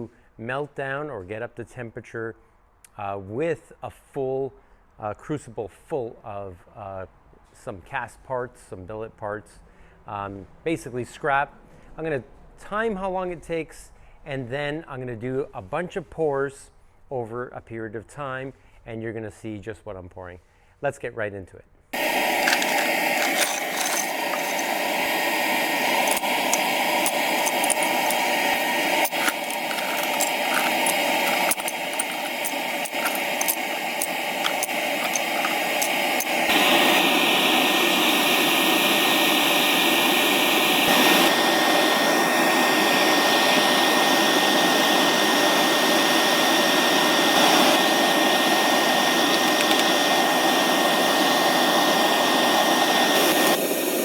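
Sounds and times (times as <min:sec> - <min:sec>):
furnace burner rushing: 0:22.0 - 0:54.0.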